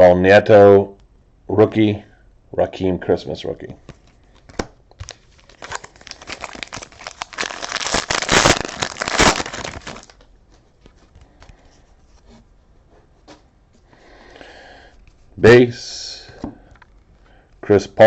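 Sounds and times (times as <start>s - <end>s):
foil wrapper crinkling and tearing: 4.4s - 10.3s.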